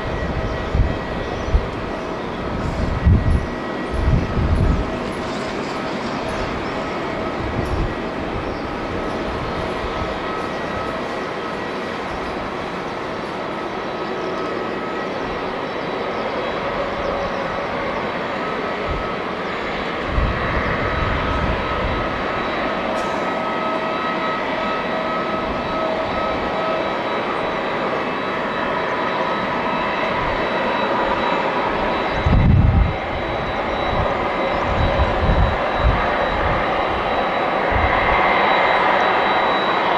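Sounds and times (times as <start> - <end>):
jet engines running: 0.0 - 39.9.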